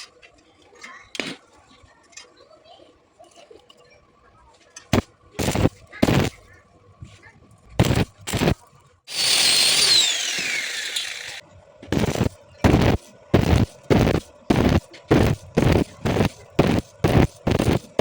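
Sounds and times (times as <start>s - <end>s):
welding arc bursts: 5.4s - 6.4s, 7.8s - 18.0s
power tool whine: 7.8s - 18.0s.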